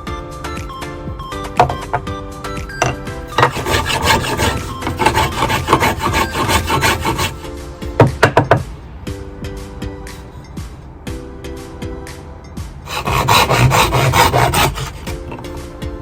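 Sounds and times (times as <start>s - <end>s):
background music: 0.0s - 16.0s
sharp wooden knocks: 1.6s - 2.1s, 2.8s - 7.3s, 8.0s - 8.7s.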